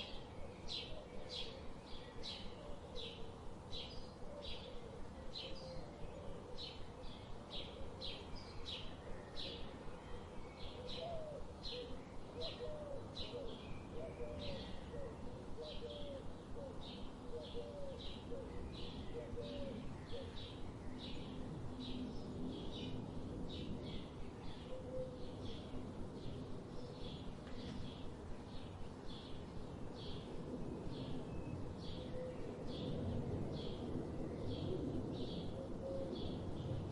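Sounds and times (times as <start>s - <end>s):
bird cooing call: 0.0s - 21.4s, 23.8s - 25.8s, 31.4s - 33.8s, 34.4s - 36.8s.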